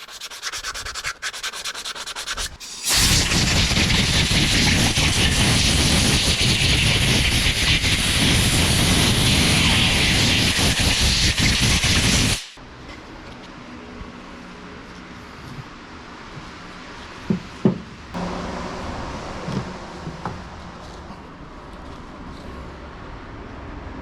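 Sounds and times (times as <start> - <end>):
pressurised jet hissing: 2.5 - 12.5.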